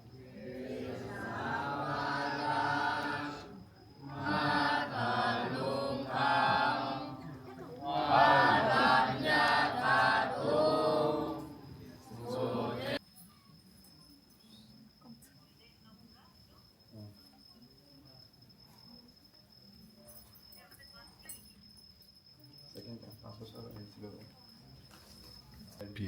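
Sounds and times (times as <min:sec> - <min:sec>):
group of voices chanting: 0:00.2 - 0:13.0.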